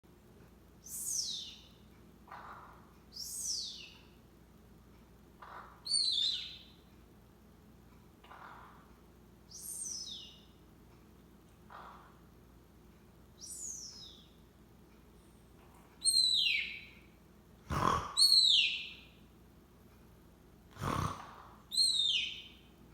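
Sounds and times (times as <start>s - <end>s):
parrot snoring breathily: 17.7s - 18.2s, 20.7s - 21.5s.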